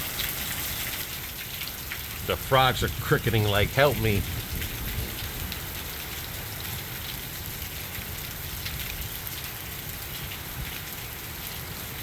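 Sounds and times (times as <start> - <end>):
heavy rain pouring: 0.0 - 12.0
gusting wind rumble: 2.1 - 6.4.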